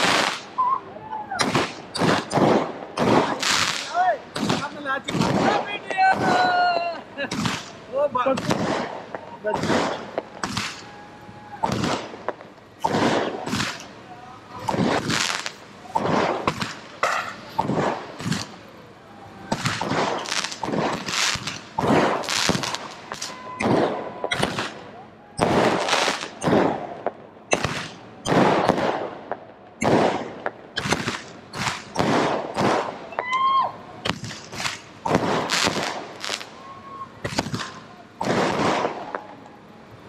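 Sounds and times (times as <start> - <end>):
firework cake bangs: 1.4 - 10.9, 11.6 - 13.9, 14.6 - 18.6, 19.5 - 24.8, 25.4 - 33.2, 34.0 - 36.5, 37.2 - 39.3.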